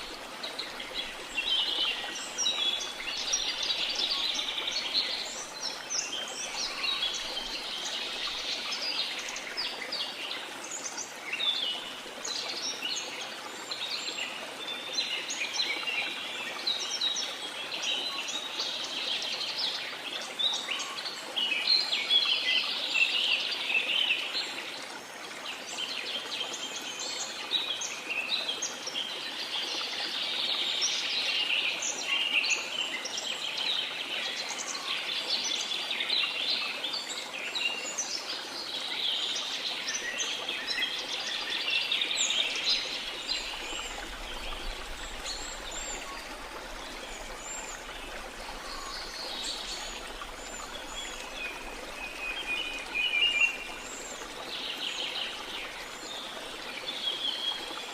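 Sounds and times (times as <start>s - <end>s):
falling water hiss: 39.4s - 57.9s.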